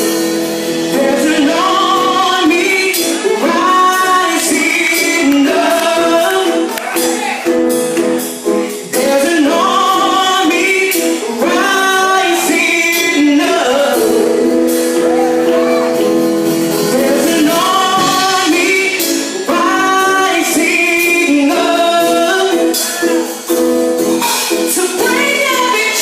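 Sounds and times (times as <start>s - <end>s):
women singing gospel: 0.9s - 7.0s, 8.8s - 15.4s, 16.8s - 22.8s.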